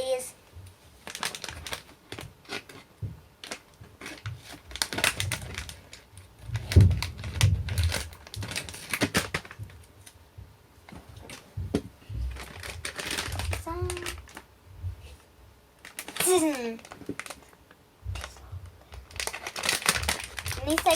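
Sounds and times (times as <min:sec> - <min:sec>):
package crinkling and tearing: 0:01.0 - 0:10.2, 0:12.3 - 0:14.5, 0:15.8 - 0:17.6, 0:18.2 - 0:20.9
dull thumps: 0:09.5 - 0:14.0.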